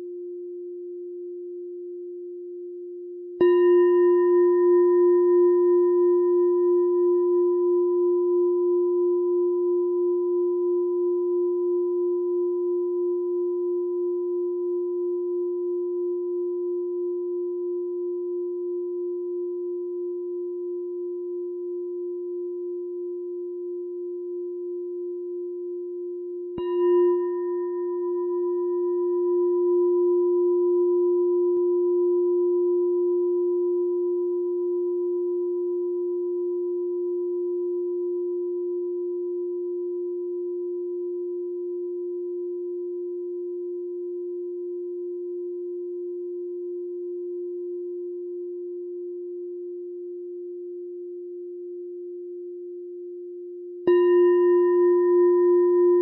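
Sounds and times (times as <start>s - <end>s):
meditation bell ringing: 3.4s - 10.3s, 26.6s - 46.3s, 53.8s - 56.0s.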